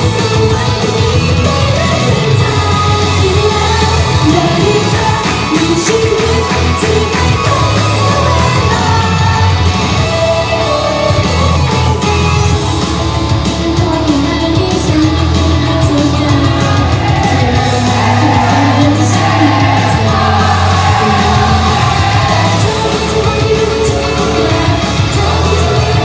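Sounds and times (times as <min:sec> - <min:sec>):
rock pop song over pa: 0:00.0 - 0:26.0
group singing: 0:15.8 - 0:26.0
crowd shouting: 0:16.2 - 0:26.0.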